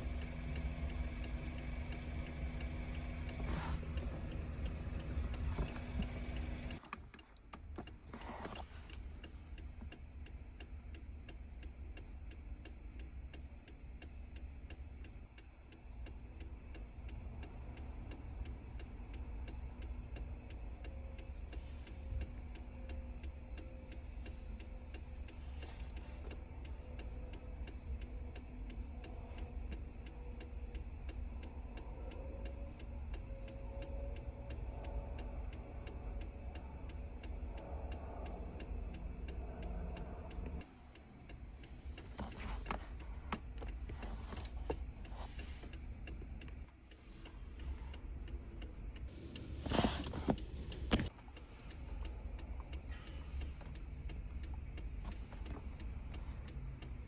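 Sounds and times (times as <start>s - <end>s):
mechanical hum: 0.0s - 7.3s, 14.9s - 57.0s
rapid ticking: 0.0s - 7.6s.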